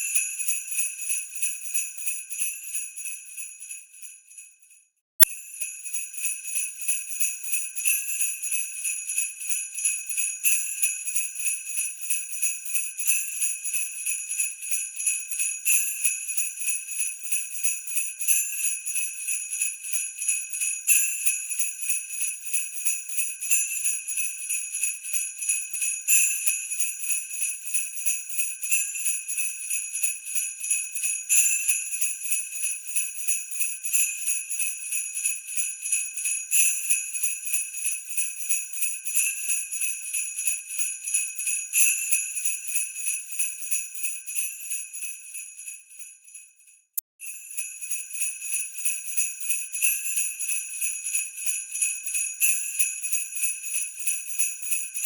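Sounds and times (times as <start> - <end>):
sleigh bells jingling: 47.3 - 55.0.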